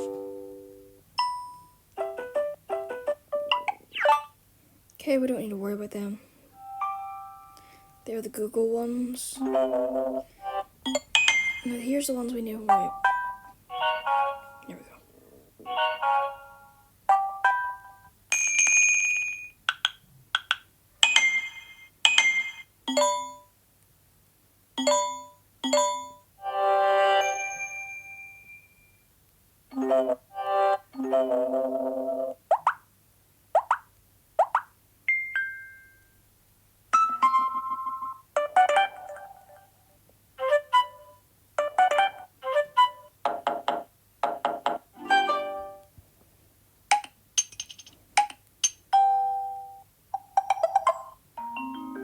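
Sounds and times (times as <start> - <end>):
phone alert chime: 6.6 - 8.0, 21.0 - 23.5, 24.8 - 26.2, 27.0 - 29.0, 35.1 - 36.1
phone notification chimes: 6.6 - 8.0, 27.0 - 28.9.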